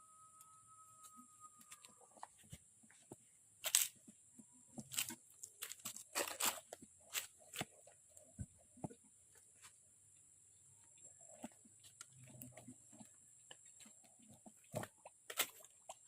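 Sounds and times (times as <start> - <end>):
rustling and crinkling handling: 1.7 - 8.5.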